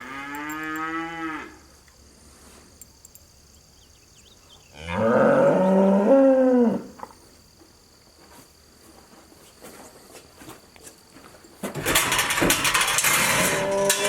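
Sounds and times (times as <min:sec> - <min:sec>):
cow mooing: 0:00.0 - 0:01.6, 0:04.8 - 0:06.9, 0:13.3 - 0:14.0.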